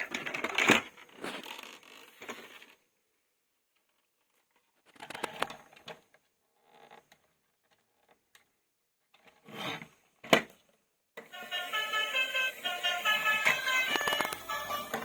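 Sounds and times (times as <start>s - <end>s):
music: 11.2s - 15.0s.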